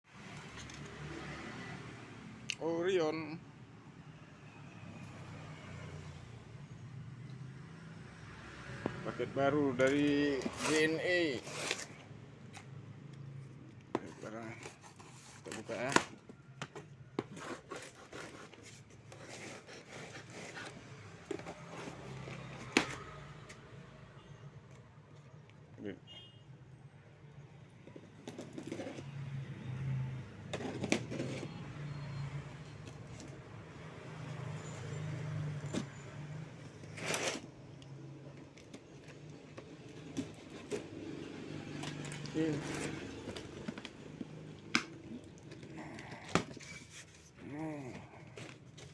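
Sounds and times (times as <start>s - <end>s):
parcel packaging scraping and rubbing: 9.5s - 23.5s, 27.8s - 33.5s, 34.1s - 48.9s.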